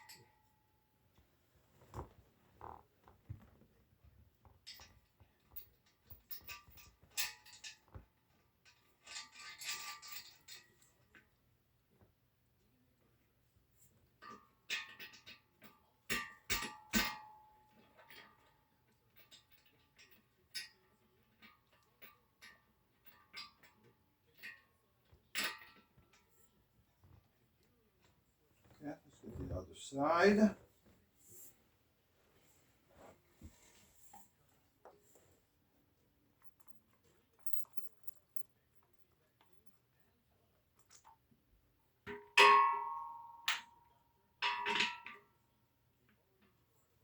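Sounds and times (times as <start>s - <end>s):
metal hardware clicking and clinking: 36.4s - 39.6s.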